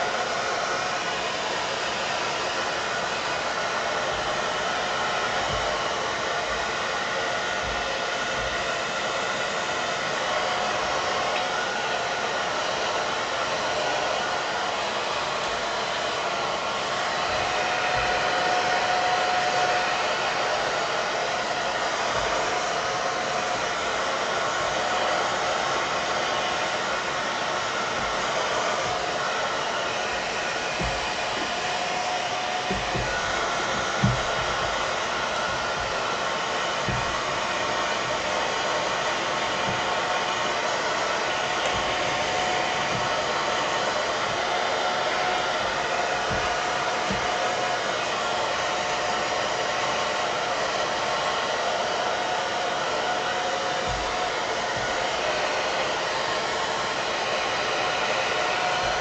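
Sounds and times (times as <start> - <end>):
hair dryer blowing: 0.0 - 59.0
soft handling bumps: 27.8 - 47.4.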